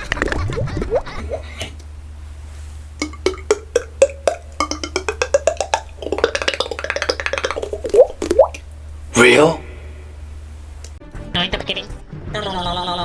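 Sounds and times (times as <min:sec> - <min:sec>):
mouth clicks and pops: 0:03.0 - 0:08.7.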